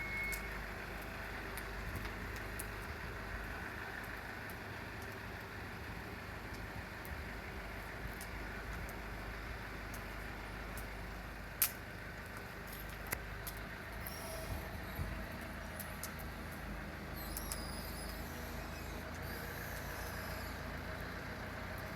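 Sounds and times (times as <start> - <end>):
wood fire crackling: 0.0 - 21.9
low rumble: 13.9 - 20.8.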